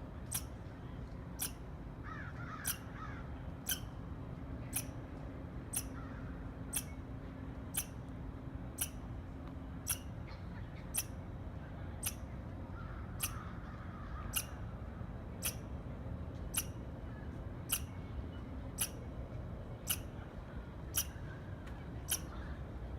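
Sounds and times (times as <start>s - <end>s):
squirrel chirping: 1.4s - 1.6s, 2.5s - 2.9s, 3.6s - 3.9s, 4.7s - 5.0s, 5.7s - 6.1s, 6.7s - 7.0s, 7.7s - 8.0s, 8.8s - 9.0s, 9.8s - 10.2s, 10.8s - 11.2s, 12.0s - 12.2s, 13.2s - 13.4s, 14.3s - 14.6s, 15.4s - 15.7s, 16.5s - 16.8s, 17.7s - 18.0s, 18.8s - 19.0s, 19.8s - 20.1s, 20.9s - 21.2s, 22.1s - 22.4s.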